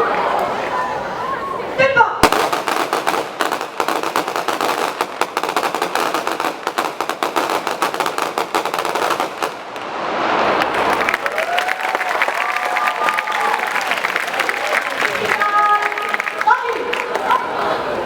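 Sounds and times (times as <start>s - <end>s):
crowd applause: 0.0s - 1.7s, 10.4s - 18.0s
blank rifle shots crackling: 2.2s - 9.6s.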